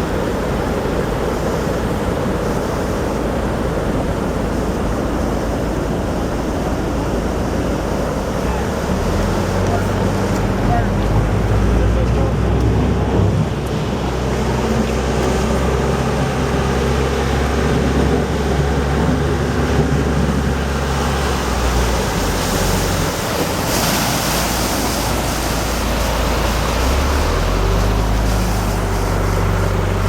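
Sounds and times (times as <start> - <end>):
floodwater rushing in river: 0.0 - 30.0
vehicle engine humming: 0.0 - 30.0.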